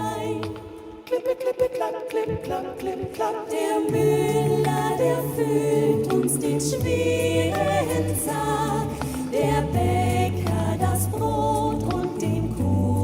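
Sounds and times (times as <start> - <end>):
vocal group singing in harmony: 0.0 - 13.0
deep sung bass line: 6.6 - 13.0.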